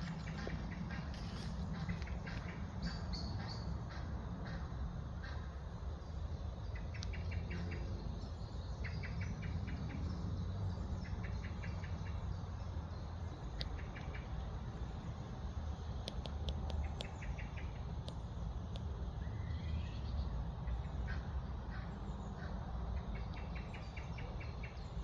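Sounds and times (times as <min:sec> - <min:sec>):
steady low rumble: 0:00.0 - 0:25.0.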